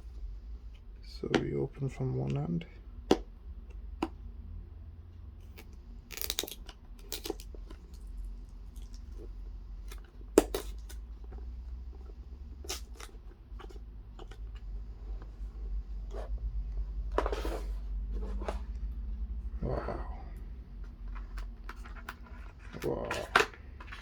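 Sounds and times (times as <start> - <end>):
packaging tearing: 5.5 - 9.0.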